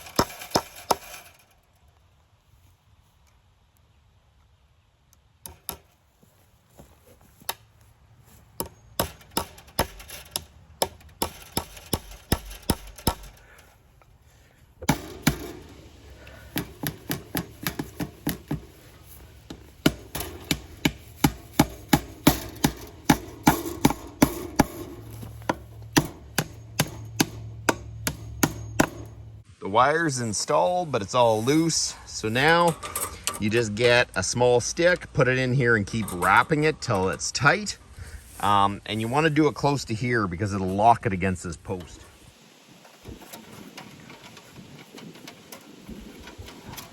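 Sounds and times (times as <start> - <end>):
hammer striking staples into wood: 0.0 - 1.3, 8.6 - 13.6, 14.8 - 18.8, 19.4 - 29.3.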